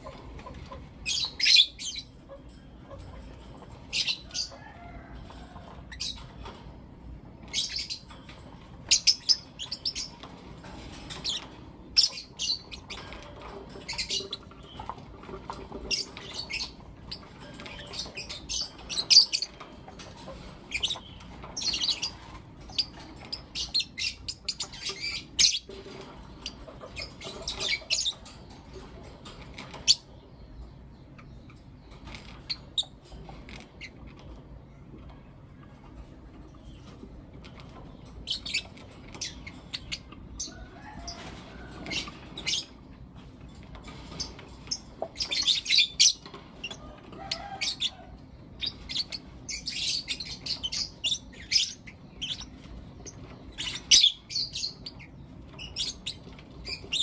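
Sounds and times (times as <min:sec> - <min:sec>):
lovebirds chirping: 0:00.0 - 0:06.6, 0:07.4 - 0:57.0.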